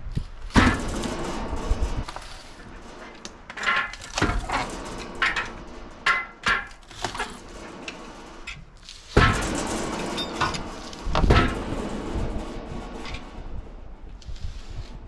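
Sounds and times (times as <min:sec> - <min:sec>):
wood knocking and clattering: 0:01.9 - 0:09.6.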